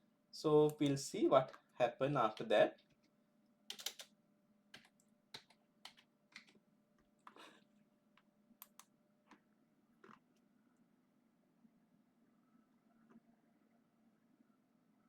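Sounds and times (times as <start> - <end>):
computer keyboard clicking: 3.7 - 4.1, 4.8 - 6.6, 8.6 - 8.9.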